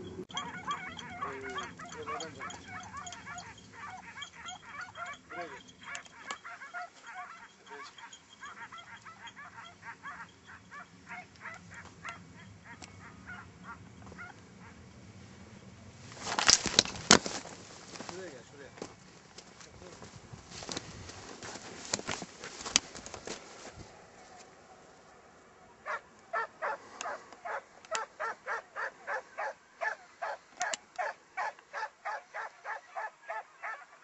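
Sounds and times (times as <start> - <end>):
faint hounds baying: 0.0 - 14.8, 22.7 - 34.0.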